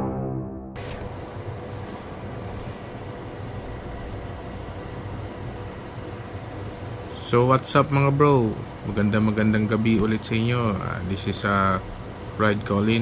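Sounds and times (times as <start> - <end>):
music: 0.0 - 0.8
faint constant hum: 0.8 - 13.0
low rumbling background noise: 0.8 - 13.0.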